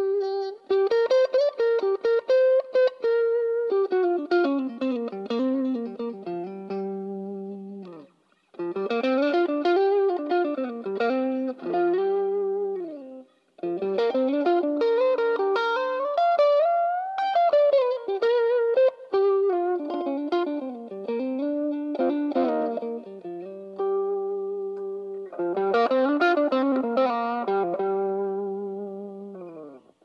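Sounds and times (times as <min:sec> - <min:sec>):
electric guitar melody: 0:00.0 - 0:30.0.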